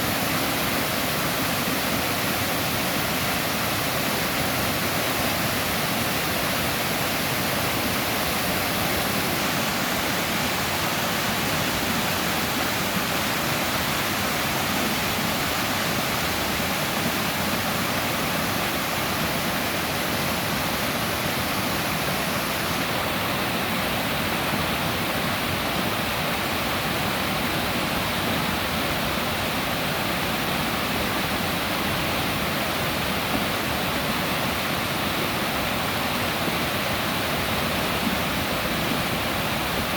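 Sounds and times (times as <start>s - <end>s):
stream rushing water: 0.0s - 39.9s.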